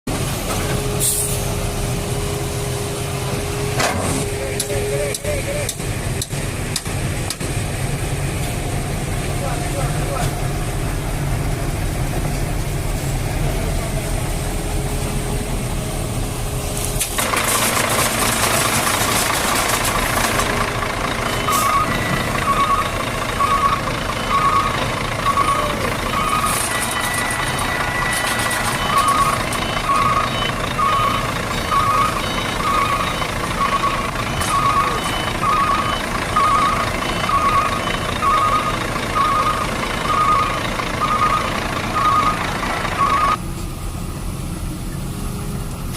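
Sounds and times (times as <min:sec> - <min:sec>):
hiss: 0:01.0 - 0:01.7
short reversing beeps: 0:21.2 - 0:43.4.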